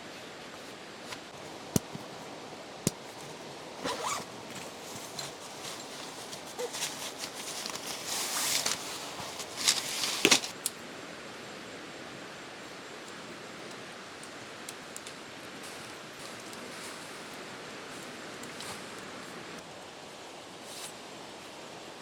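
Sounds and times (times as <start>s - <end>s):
rustling handling noise: 2.9s - 10.6s.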